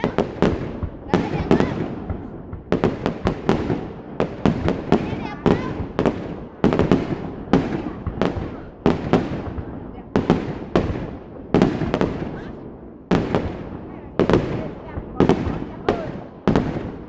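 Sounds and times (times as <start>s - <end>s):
fireworks bursting with bangs: 0.0s - 17.0s.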